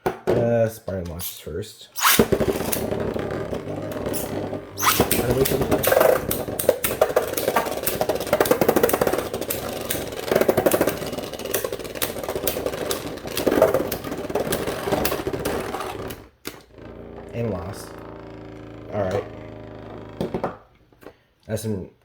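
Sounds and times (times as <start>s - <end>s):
spinning tops whirring and scraping: 2.0s - 16.7s.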